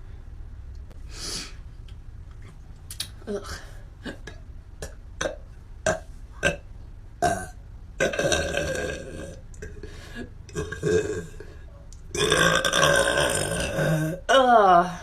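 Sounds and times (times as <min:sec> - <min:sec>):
woman burping: 0:03.3 - 0:06.6, 0:07.2 - 0:09.8, 0:10.5 - 0:11.5, 0:12.2 - 0:14.9.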